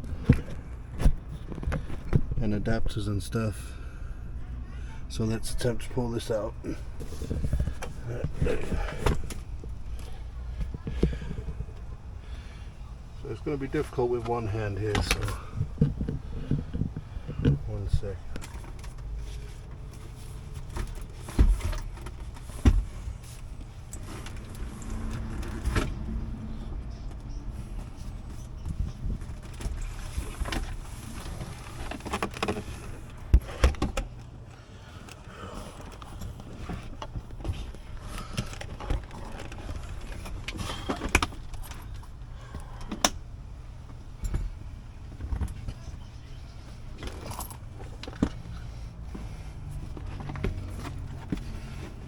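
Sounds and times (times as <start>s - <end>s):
steady low hum: 0.0s - 52.0s
plastic knocks clicks and scrapes: 14.9s - 19.1s, 28.7s - 34.2s.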